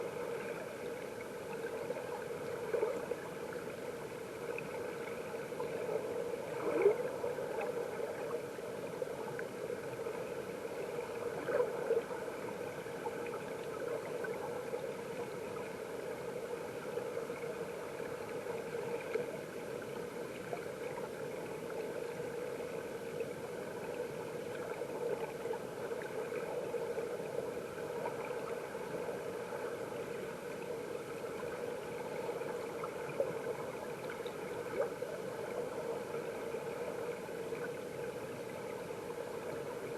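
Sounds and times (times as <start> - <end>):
underwater stream rushing and bubbling: 0.0 - 39.9.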